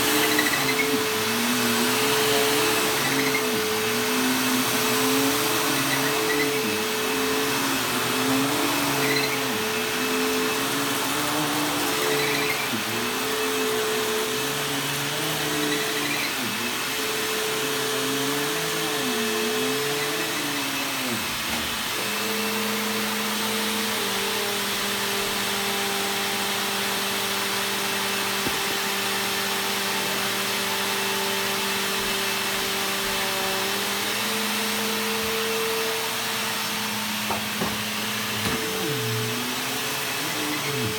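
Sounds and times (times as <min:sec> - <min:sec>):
vacuum cleaner running on carpet: 0:00.0 - 0:40.9.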